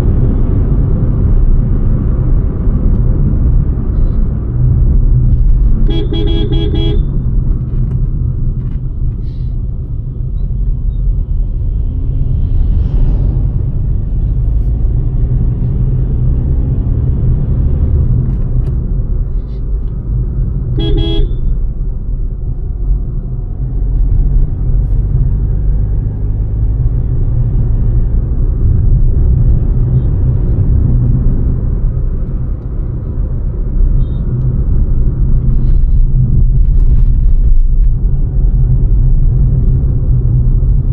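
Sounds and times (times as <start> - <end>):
car engine and tyre rumble: 0.0 - 40.9
car horn toot: 5.8 - 7.2, 20.8 - 21.6, 34.0 - 34.3.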